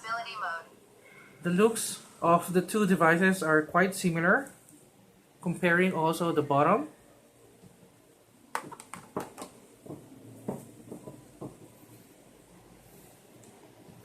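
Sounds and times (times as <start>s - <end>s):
tablets clicking and tapping: 8.5s - 11.8s.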